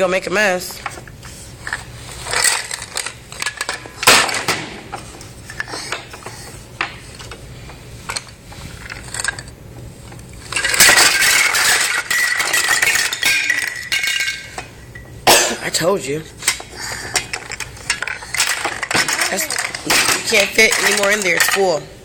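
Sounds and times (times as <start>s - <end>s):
toy pieces clattering into a pan: 2.3s - 4.4s, 8.1s - 9.5s, 10.4s - 14.7s, 16.4s - 21.8s.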